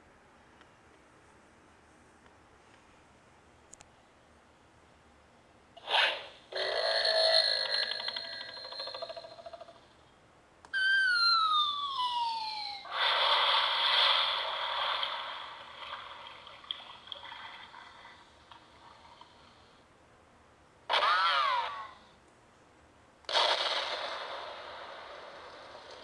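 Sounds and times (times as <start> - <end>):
cartoon falling whistle: 10.7 - 12.9
cartoon crash: 10.8 - 15.6, 20.9 - 22.0, 23.3 - 26.0.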